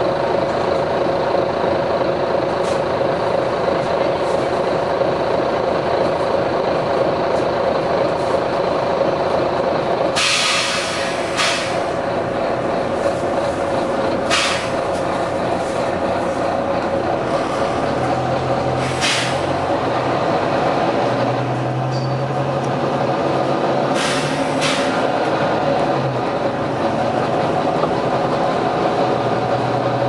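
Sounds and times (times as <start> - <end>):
bus engine running: 0.0 - 30.0
bus air system hissing: 10.2 - 12.0, 14.2 - 14.9, 18.7 - 19.6, 23.9 - 25.1.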